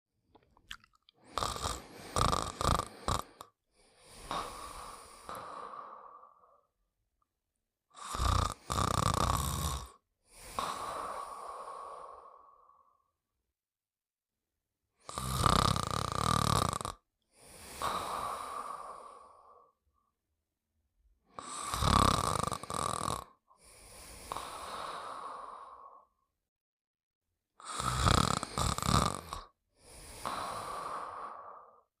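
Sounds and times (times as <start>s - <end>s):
loud rattling snore: 1.3s - 3.4s, 8.0s - 10.0s, 15.1s - 17.0s, 21.4s - 23.3s, 27.7s - 29.5s.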